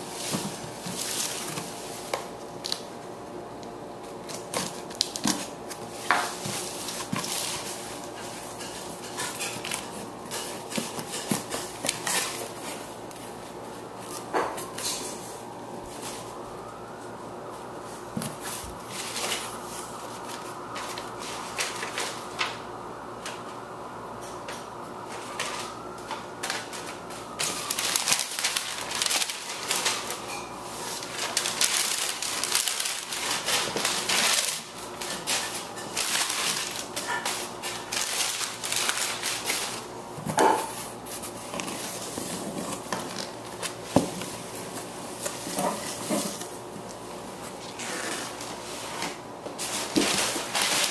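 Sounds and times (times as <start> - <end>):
faint steady hum: 0.0 - 50.9
plastic packaging crinkling: 4.0 - 15.3, 25.1 - 48.6, 49.6 - 50.9.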